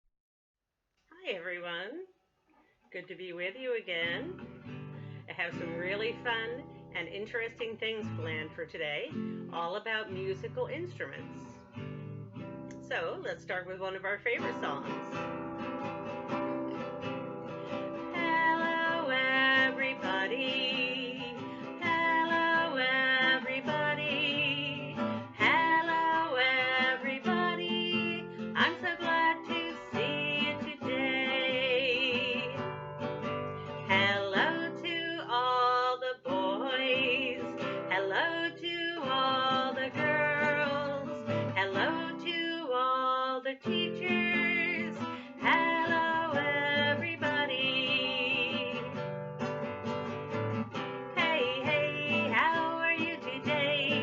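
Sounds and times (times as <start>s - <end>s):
woman singing: 4.0s - 4.4s, 5.3s - 11.4s, 17.6s - 32.8s, 33.7s - 49.0s, 51.1s - 54.0s
strummed acoustic guitar: 4.0s - 42.6s, 43.6s - 54.0s.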